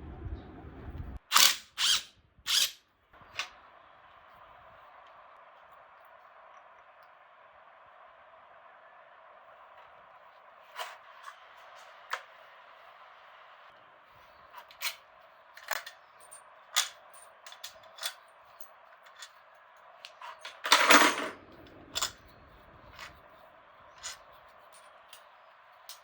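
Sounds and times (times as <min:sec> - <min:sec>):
metal tools clinking: 0:15.6 - 0:19.4, 0:20.1 - 0:23.2.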